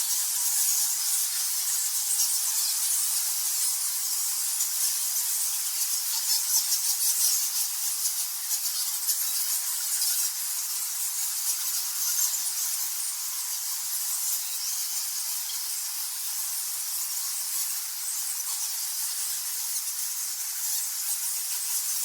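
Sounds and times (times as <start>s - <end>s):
bats squeaking and chittering: 0.0s - 22.0s.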